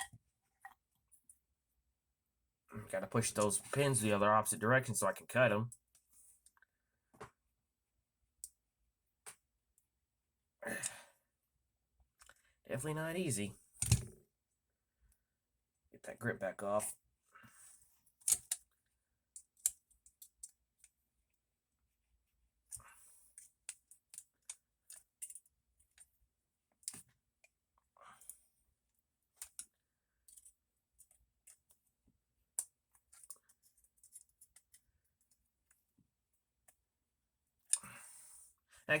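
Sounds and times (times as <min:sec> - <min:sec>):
clicks of metal knife parts: 0:18.2 - 0:18.6.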